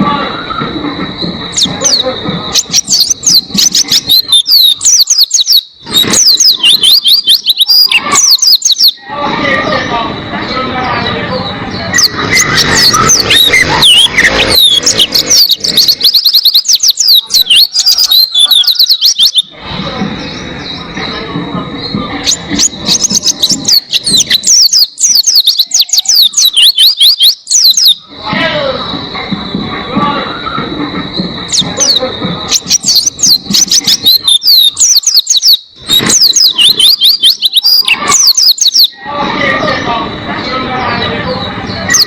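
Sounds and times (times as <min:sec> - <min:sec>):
bird twittering song: 0:00.0 - 0:09.0, 0:09.7 - 0:28.1, 0:30.4 - 0:39.0, 0:40.4 - 0:42.0.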